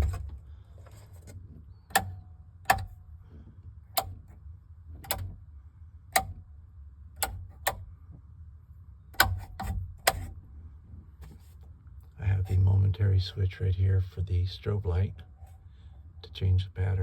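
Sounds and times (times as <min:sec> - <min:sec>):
rocker switches clicking: 0:01.9 - 0:03.1, 0:03.9 - 0:04.4, 0:05.0 - 0:05.4, 0:06.1 - 0:06.5, 0:07.1 - 0:07.9, 0:09.1 - 0:10.4.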